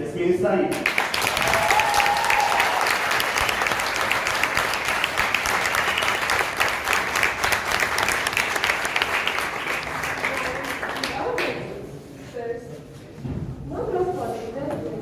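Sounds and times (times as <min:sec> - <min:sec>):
audience applauding: 0:00.7 - 0:11.6.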